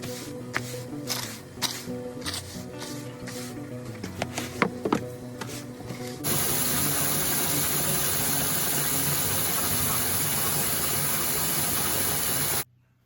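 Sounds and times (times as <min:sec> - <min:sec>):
background music: 0:00.0 - 0:12.6
loud hissing noise: 0:06.2 - 0:12.7.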